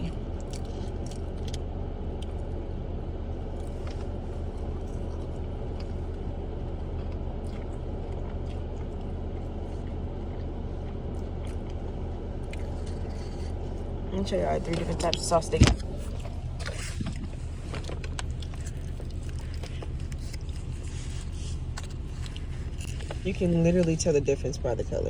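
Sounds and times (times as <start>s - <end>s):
car engine idling: 0.0s - 25.0s.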